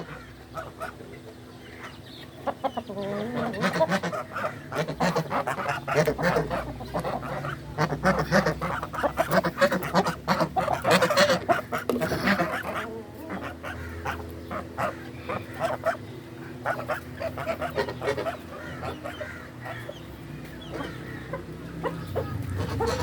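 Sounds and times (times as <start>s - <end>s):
poultry calling: 0.0s - 23.0s.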